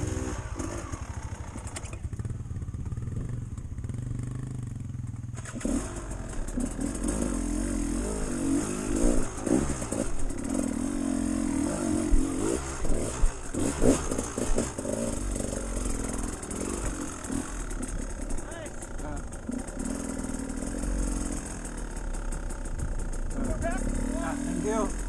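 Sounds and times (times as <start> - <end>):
off-road vehicle engine revving: 0.0 - 2.1, 5.4 - 25.0.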